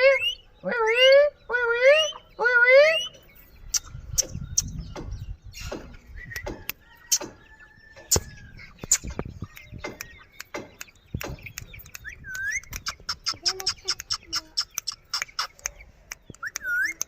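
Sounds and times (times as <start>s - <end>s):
parrot clicks and chirps: 3.6s - 17.0s.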